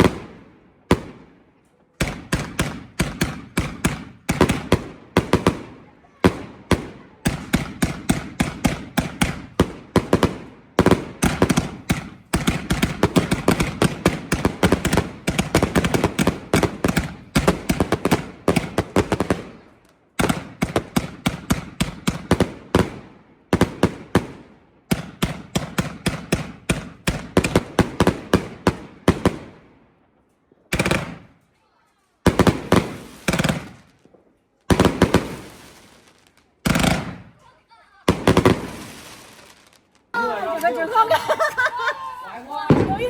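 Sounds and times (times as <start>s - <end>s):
firework cake bangs: 2.0s - 19.5s.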